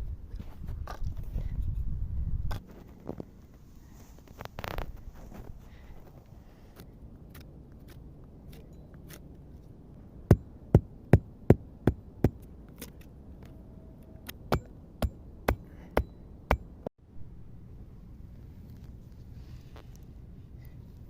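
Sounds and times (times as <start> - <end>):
hatchet chopping firewood: 10.3 - 13.0, 14.3 - 16.8.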